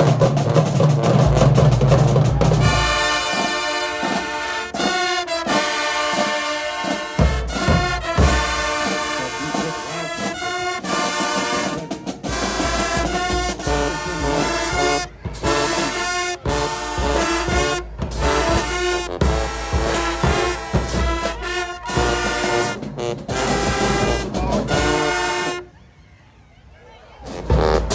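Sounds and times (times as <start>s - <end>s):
drums: 0.0s - 25.6s, 27.2s - 27.9s
marching band brass: 0.0s - 25.9s, 27.1s - 27.9s
heavy low bass: 12.4s - 25.0s.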